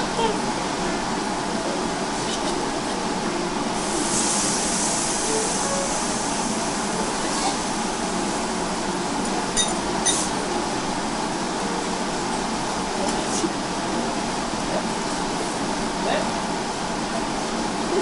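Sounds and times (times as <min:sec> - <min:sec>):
tableware clinks: 0:09.6 - 0:10.3.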